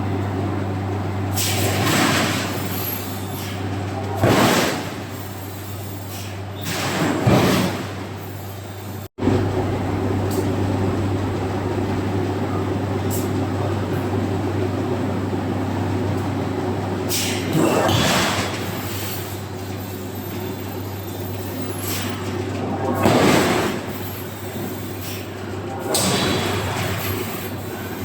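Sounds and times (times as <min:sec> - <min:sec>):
machinery humming: 0:07.9 - 0:28.0.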